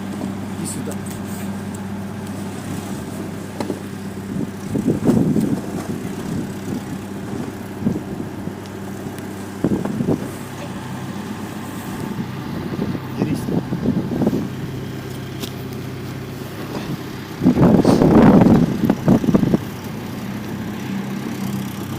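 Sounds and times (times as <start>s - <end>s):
tractor engine idling: 0.0s - 21.9s.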